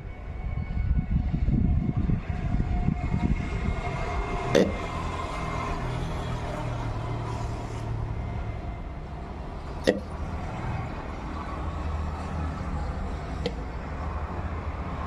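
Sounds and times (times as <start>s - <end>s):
sharp hiccup: 4.6s - 4.8s, 9.8s - 10.2s.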